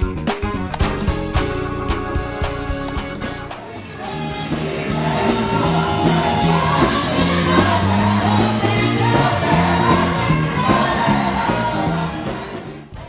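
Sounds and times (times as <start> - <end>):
gospel worship music with singing: 1.3 - 13.0.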